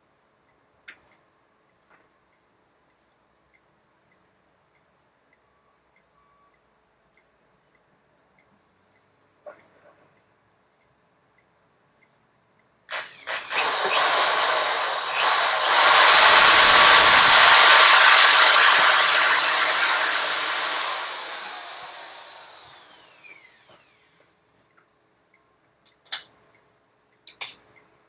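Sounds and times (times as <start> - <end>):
electric drill whining: 12.9 - 24.1.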